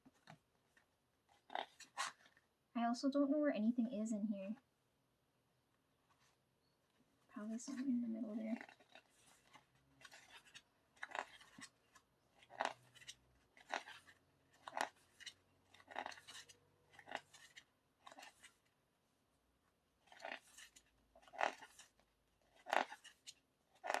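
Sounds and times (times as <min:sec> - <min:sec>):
paper pages turning: 0:00.0 - 0:02.4, 0:07.4 - 0:18.7, 0:20.0 - 0:24.0.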